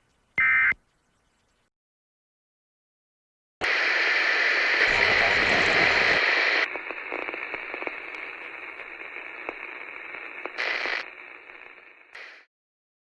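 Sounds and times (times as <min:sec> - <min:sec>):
radio static hiss: 0:03.6 - 0:12.5.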